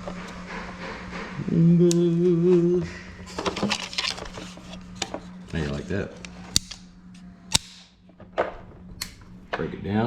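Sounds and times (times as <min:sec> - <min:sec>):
steady low hum: 0:00.0 - 0:10.0
man humming a note: 0:01.4 - 0:02.9.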